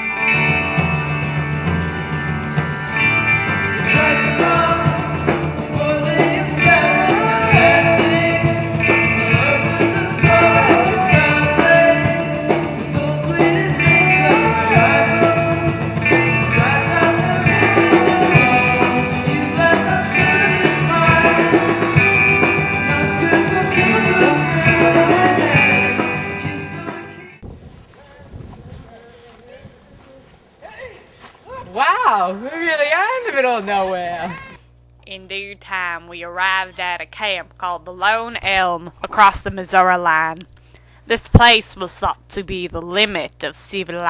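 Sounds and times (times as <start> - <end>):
rock music with guitar: 0.0 - 27.4
gliding vocal line: 3.4 - 27.4.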